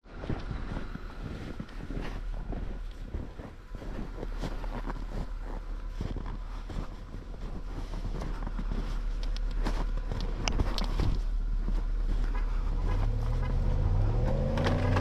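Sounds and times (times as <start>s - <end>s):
low engine rumble: 0.0s - 15.0s
snow crunching under tyres: 0.0s - 15.0s
sharp clicks: 9.1s - 11.0s.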